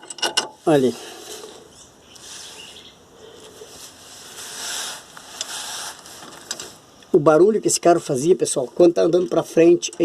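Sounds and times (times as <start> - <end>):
hand tools and metal parts scraping: 0.0 - 6.8.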